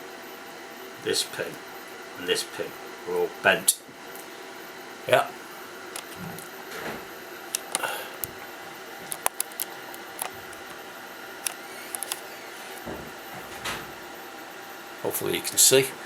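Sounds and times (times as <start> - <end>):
small hard parts clicking: 7.5 - 8.4, 9.0 - 10.8, 11.4 - 12.2.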